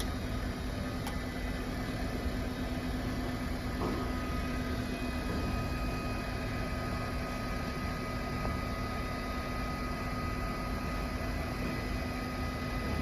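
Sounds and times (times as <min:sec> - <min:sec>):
hot-air blower and fans humming: 0:00.0 - 0:13.0.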